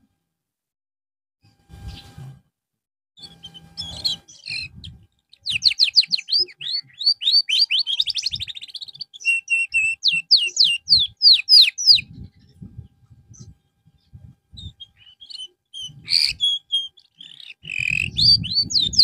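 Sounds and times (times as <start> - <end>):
canary singing: 3.2 - 19.0.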